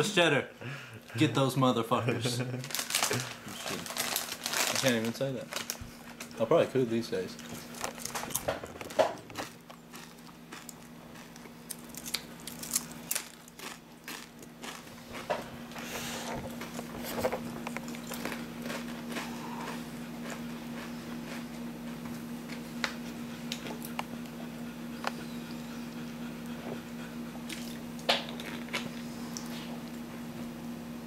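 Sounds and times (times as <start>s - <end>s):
steady low hum: 0.0s - 31.0s
person chewing crunchy chips: 2.6s - 6.3s, 7.4s - 22.0s, 27.4s - 29.5s.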